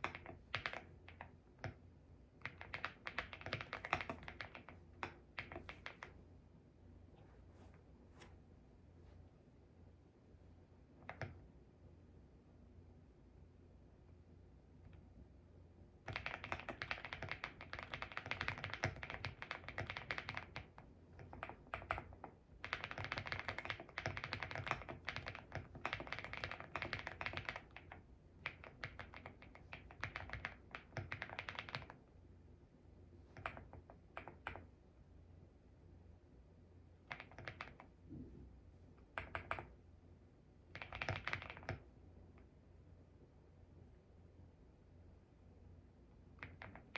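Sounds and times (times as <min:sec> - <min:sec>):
mechanical keyboard typing: 0:00.0 - 0:01.8, 0:02.4 - 0:06.2, 0:16.0 - 0:32.0, 0:33.3 - 0:34.7, 0:37.0 - 0:38.0, 0:39.0 - 0:39.8, 0:40.7 - 0:41.9, 0:46.4 - 0:46.9.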